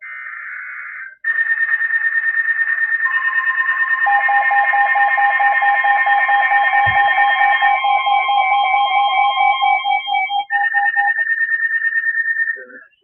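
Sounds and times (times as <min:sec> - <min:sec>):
pulsing electronic alert tones: 0:03.0 - 0:12.8
low thump: 0:06.8 - 0:07.2.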